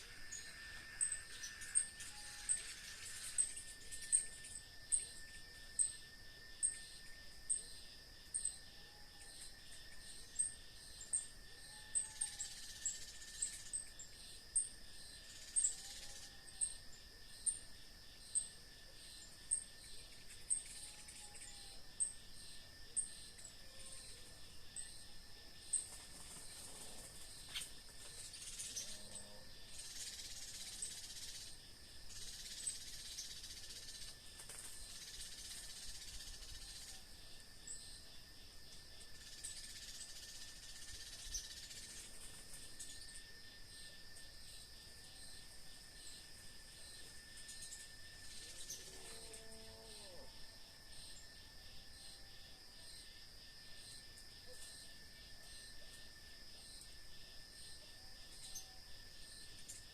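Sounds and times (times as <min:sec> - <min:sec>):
high insect drone: 0:00.0 - 0:59.9.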